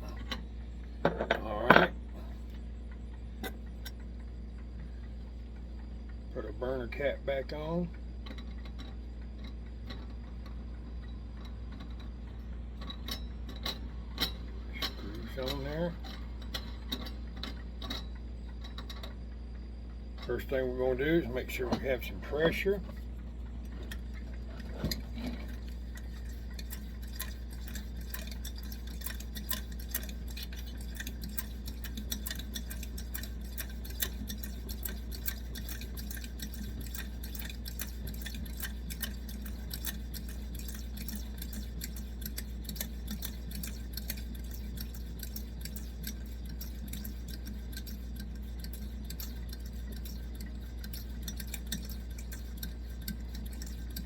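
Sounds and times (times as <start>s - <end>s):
steady low hum: 0.0s - 54.0s
hand pump strokes clicking: 12.8s - 18.1s, 20.2s - 54.0s.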